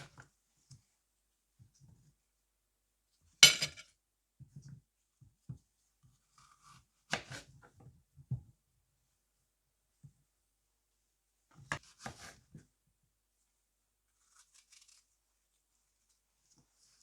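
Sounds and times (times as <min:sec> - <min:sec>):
knife cutting apple: 0:06.2 - 0:07.7, 0:11.6 - 0:12.7, 0:14.2 - 0:15.1.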